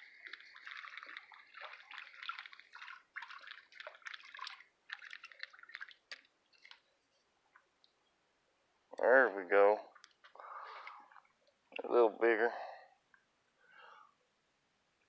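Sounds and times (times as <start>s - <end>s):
water splashing and dripping: 0.0s - 8.0s.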